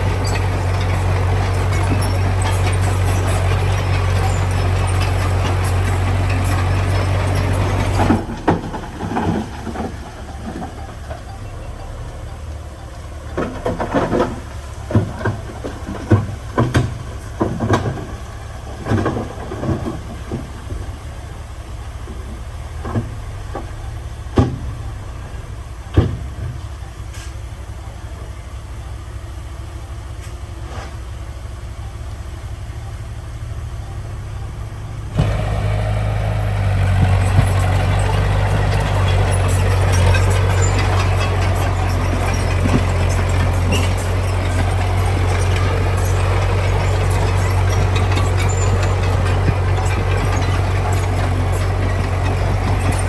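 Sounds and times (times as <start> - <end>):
metallic clanks and knocks: 0.0 - 11.7, 13.2 - 20.8, 35.2 - 53.0
diesel engine idling: 0.0 - 53.0.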